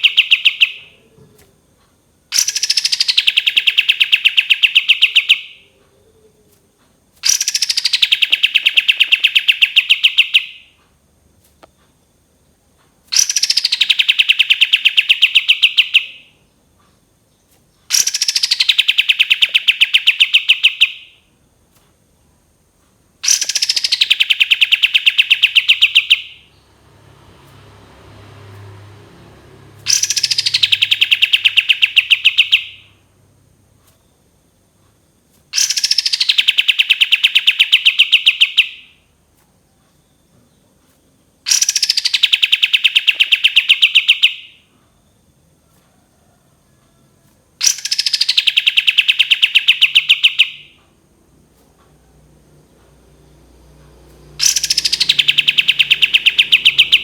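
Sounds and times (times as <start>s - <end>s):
bulbul rattling song: 0.0s - 1.0s, 2.3s - 5.6s, 7.2s - 10.8s, 13.1s - 16.3s, 17.8s - 21.2s, 23.2s - 28.8s, 29.7s - 33.0s, 35.5s - 39.0s, 41.5s - 44.6s, 47.6s - 50.8s, 54.1s - 57.0s.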